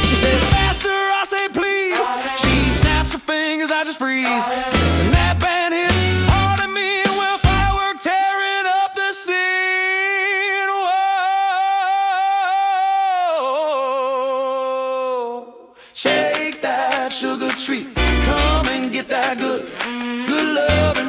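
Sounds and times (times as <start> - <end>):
rockabilly band playing: 0.0 - 0.9, 2.4 - 3.2, 4.7 - 7.8.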